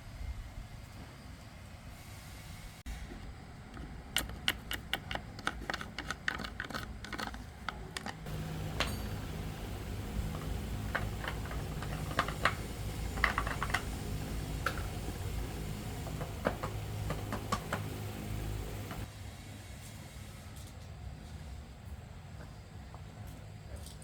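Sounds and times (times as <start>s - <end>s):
low steady hum: 8.2s - 19.1s
clicks and taps of hand tools: 10.2s - 15.3s, 16.0s - 19.0s.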